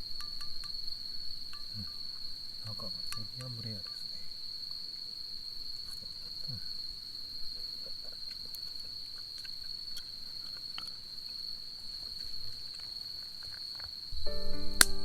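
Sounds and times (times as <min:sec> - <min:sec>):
crickets trilling: 0:00.0 - 0:15.0
faint ticks: 0:02.6 - 0:04.8.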